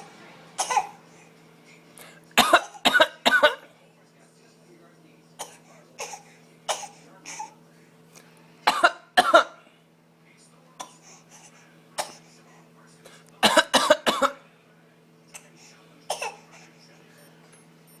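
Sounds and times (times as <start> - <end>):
person coughing: 2.4 - 3.6, 5.4 - 7.5, 8.7 - 9.6, 13.4 - 14.4, 16.1 - 16.5.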